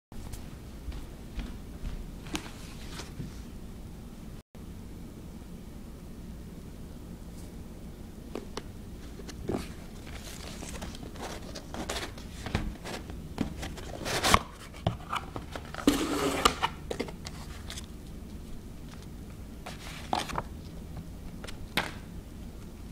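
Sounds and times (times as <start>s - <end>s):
packaging rustling: 9.1s - 17.9s, 19.7s - 20.7s.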